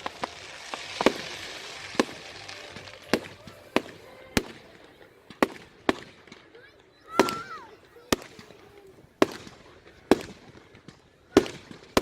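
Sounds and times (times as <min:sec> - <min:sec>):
faint hiss: 0:00.0 - 0:05.9
fireworks bangs: 0:00.0 - 0:12.0.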